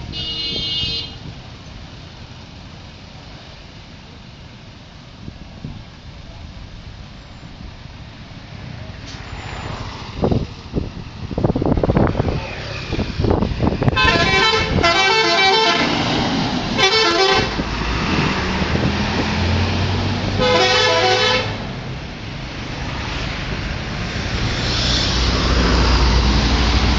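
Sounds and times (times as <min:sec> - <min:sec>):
vehicle engine and traffic: 0:00.0 - 0:26.9
multi-tone bus horn melody: 0:00.1 - 0:01.3, 0:13.9 - 0:17.6, 0:20.4 - 0:21.6.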